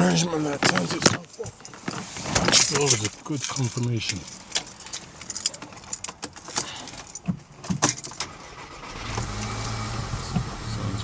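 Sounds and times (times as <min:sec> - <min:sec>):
keys jangling and clicking: 0:00.0 - 0:08.4
car engine droning: 0:00.0 - 0:11.0.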